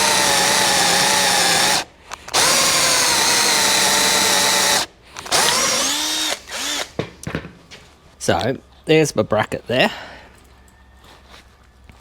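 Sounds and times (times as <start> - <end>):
power drill boring through steel: 0.0 - 6.9.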